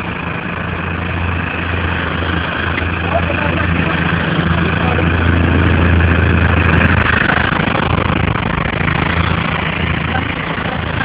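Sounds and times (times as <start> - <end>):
heavy rain pouring: 0.0 - 11.0
low steady hum: 0.0 - 11.0.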